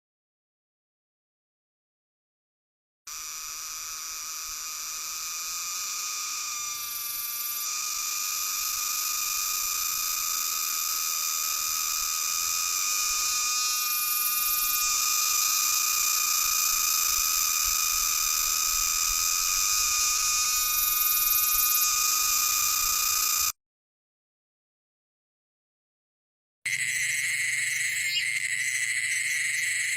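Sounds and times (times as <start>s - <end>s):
cicada buzzing: 3.1s - 23.5s, 26.7s - 29.9s.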